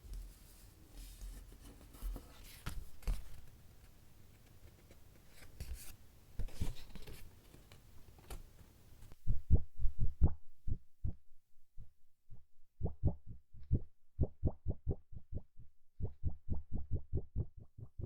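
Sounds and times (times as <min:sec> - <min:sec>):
loud dull low thumps: 0:09.2 - 0:18.0.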